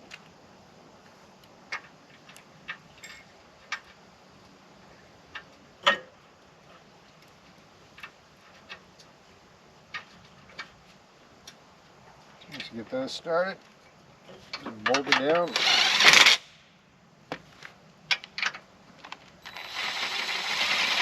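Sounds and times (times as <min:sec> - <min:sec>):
metal hardware clicks and clinks: 0:03.0 - 0:03.3.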